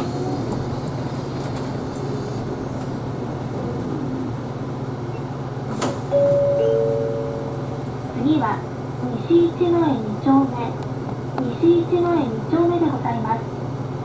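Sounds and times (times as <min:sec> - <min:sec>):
bus engine droning: 0:00.0 - 0:14.0.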